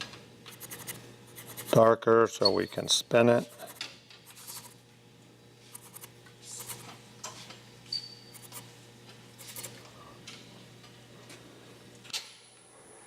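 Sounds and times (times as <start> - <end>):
pencil scratching on wood: 0.5 - 1.8, 3.4 - 4.7, 5.7 - 6.9, 9.4 - 9.7.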